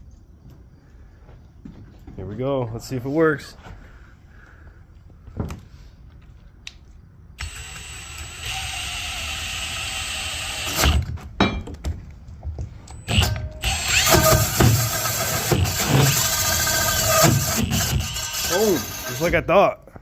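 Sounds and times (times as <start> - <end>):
power drill boring into wood: 7.4 - 11.1, 13.0 - 19.4
drill bit knocking: 13.0 - 19.4.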